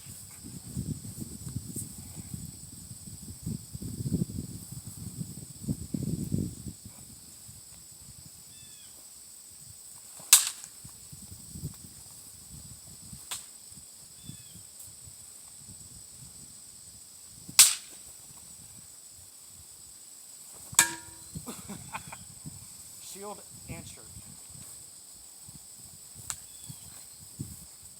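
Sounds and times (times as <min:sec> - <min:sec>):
sharp archery shot cracks: 0:10.2 - 0:10.7, 0:17.6 - 0:18.0, 0:20.8 - 0:21.3.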